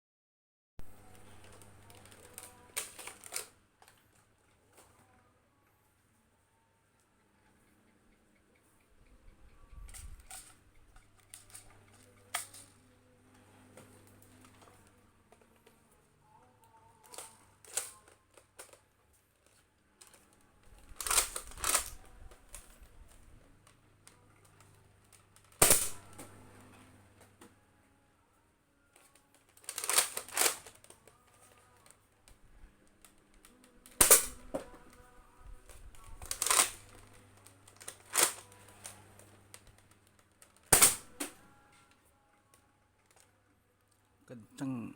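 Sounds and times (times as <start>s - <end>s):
toy blaster plastic clacks: 1.5s - 4.0s, 9.7s - 12.7s, 17.0s - 18.8s, 20.9s - 22.7s, 29.0s - 32.0s, 35.8s - 38.6s.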